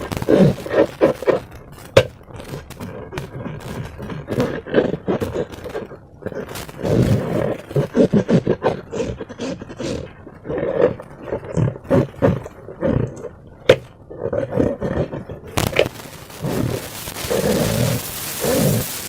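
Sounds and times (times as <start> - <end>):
slime squelching: 0.0 - 8.0
slime snapping: 15.6 - 16.0.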